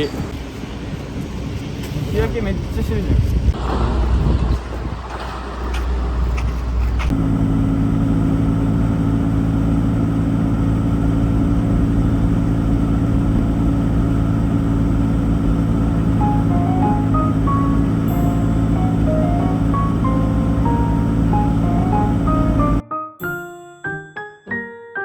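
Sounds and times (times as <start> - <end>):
engine running with low hum: 3.4 - 22.8.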